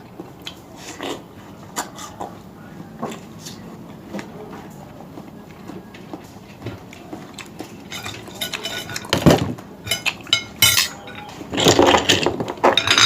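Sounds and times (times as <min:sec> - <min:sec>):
dishes clinking on a table: 0:07.6 - 0:13.0.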